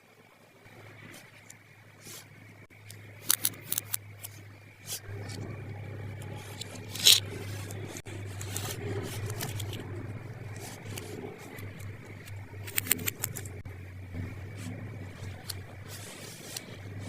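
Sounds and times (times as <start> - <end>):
steady low hum: 0.3 - 17.0
plastic toy pieces clicking: 3.2 - 4.3, 6.6 - 7.2, 12.6 - 13.6
packaging crinkle: 3.2 - 13.6.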